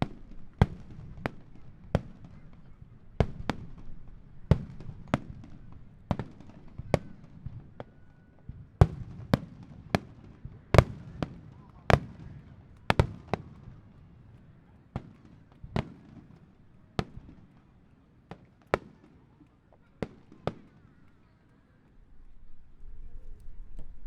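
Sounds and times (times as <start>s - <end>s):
fireworks bangs: 0.0s - 13.8s.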